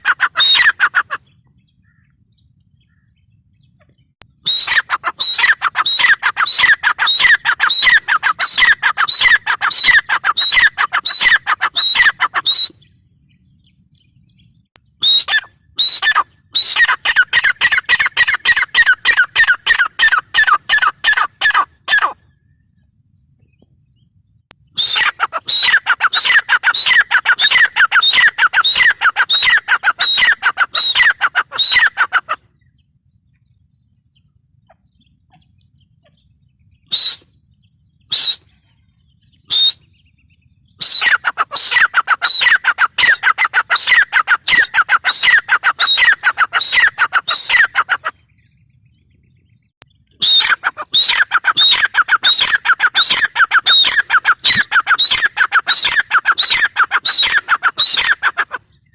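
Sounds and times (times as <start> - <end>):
bird calling sharp notes: 0.0 - 2.2, 3.8 - 13.0, 14.8 - 22.3, 24.7 - 32.6, 36.8 - 40.1, 40.7 - 48.5, 50.1 - 58.9.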